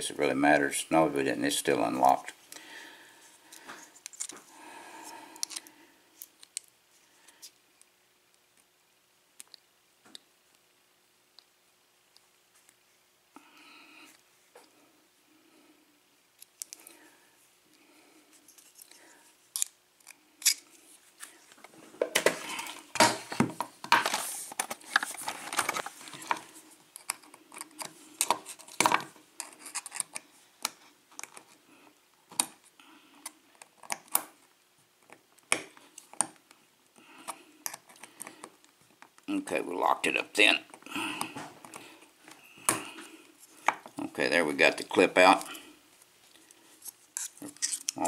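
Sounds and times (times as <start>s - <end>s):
tools clicking and scraping on lock: 19.5s - 20.6s, 27.0s - 30.2s.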